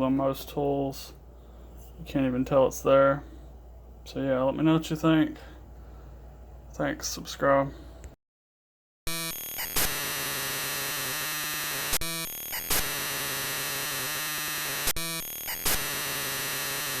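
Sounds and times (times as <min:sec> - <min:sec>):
harsh electronic static-like noise loop: 0:09.1 - 0:17.0.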